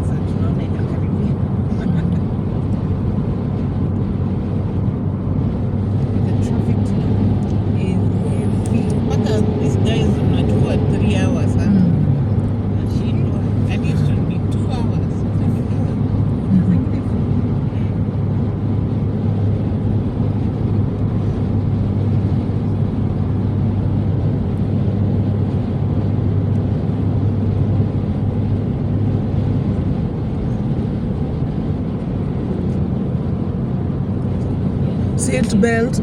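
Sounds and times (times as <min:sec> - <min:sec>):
vehicle engine and road hum: 0:00.0 - 0:36.0.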